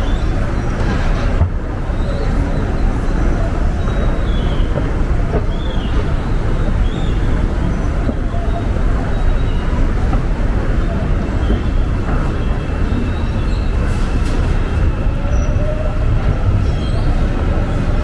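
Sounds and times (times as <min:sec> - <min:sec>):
subway train rumbling: 0:00.0 - 0:18.0.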